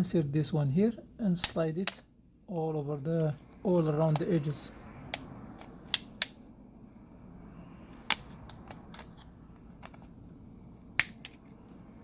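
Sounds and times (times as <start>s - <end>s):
plastic clips snapping loose: 11.0s - 11.5s.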